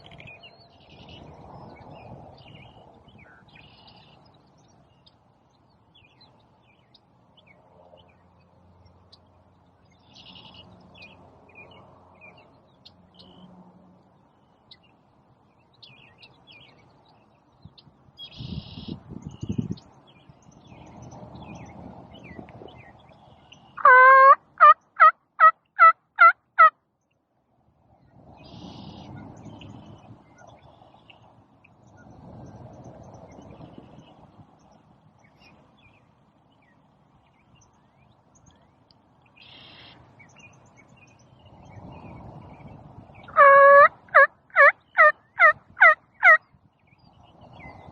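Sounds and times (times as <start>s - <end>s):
songbirds chirping: 0.0s - 47.9s
turkey yelping: 23.8s - 26.7s, 43.4s - 46.4s.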